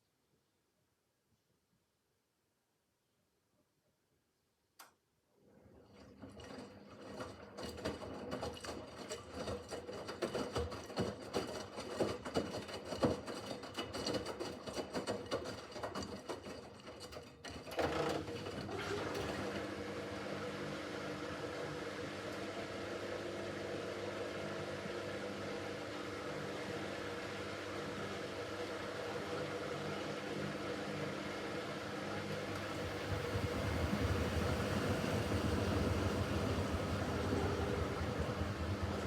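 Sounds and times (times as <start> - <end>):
washing machine motor hum: 5.6 - 39.0
washing machine drum clattering: 32.6 - 39.0.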